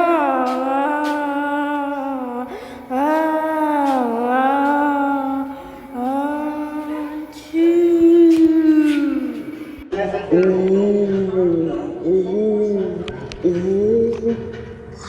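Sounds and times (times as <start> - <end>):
high voice holding long notes: 0.0 - 9.9.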